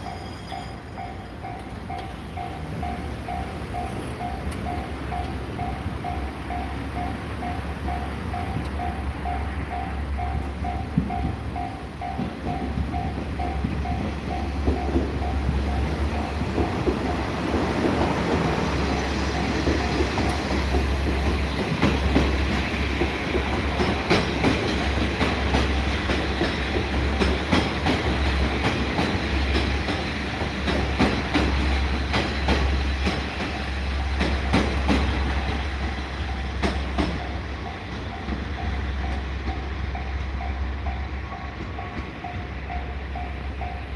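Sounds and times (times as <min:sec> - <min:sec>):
crossing warning bell: 0:00.0 - 0:43.9
train rumbling past: 0:00.0 - 0:43.9
wheel clacks over rail joints: 0:19.4 - 0:35.6.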